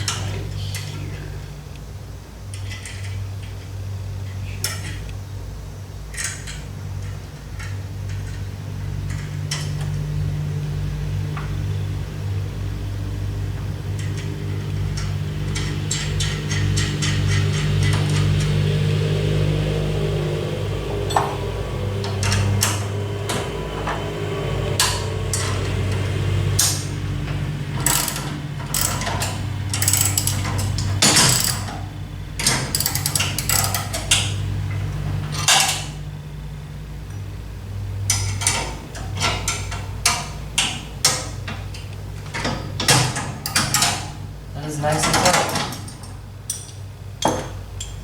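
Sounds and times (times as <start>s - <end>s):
wrench clicking and clanking: 27.8s - 34.3s, 43.4s - 44.1s.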